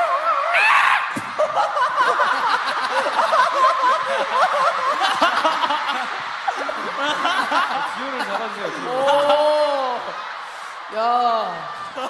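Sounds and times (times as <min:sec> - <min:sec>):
group of people laughing: 0:01.2 - 0:10.4.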